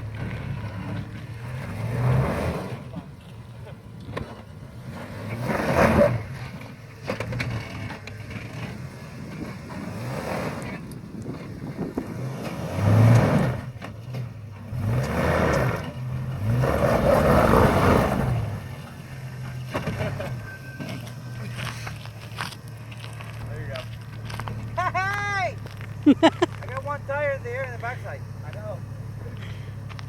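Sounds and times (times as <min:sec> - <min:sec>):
car engine running: 0:00.0 - 0:30.0
car brakes squealing: 0:12.4 - 0:23.0.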